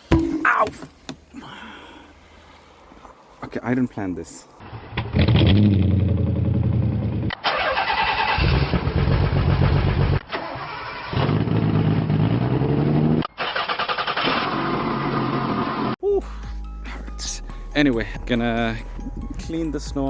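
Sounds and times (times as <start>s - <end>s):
engine starting and running: 4.6s - 16.0s.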